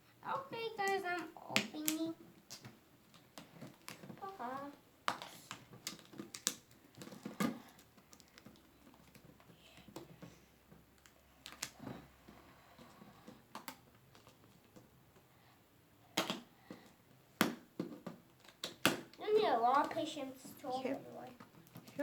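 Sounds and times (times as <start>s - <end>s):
plastic packaging snaps: 5.1s - 9.2s, 11.0s - 11.8s, 16.2s - 16.5s, 17.4s - 19.2s.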